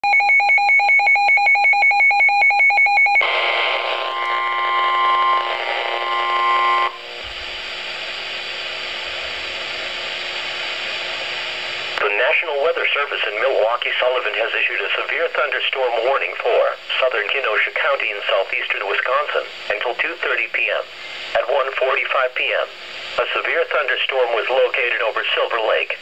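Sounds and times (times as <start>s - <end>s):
pulsing two-pitch alert tone: 4.1s - 7.0s.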